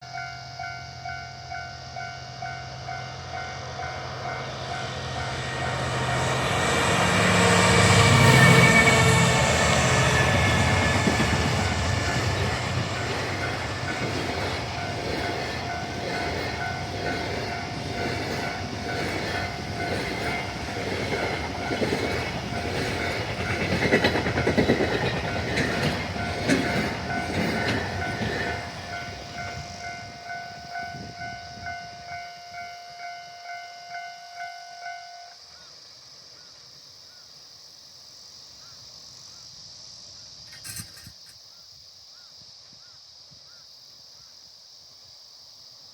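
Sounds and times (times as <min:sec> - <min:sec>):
train wheels clacking on rails: 0:03.8 - 0:31.8.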